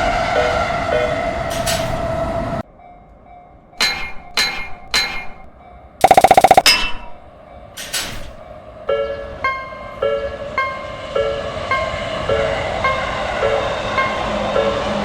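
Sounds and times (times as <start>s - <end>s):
train running: 0.0s - 15.0s
crossing alarm repeating tone: 3.8s - 7.2s
sharp ringing strikes: 3.8s - 7.3s
loud fast rattle: 6.0s - 7.2s.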